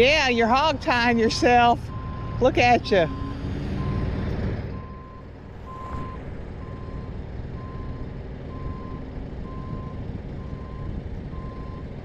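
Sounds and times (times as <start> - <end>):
diesel engine rumble: 0.0 - 12.0
backup alarm beeping: 4.7 - 11.8.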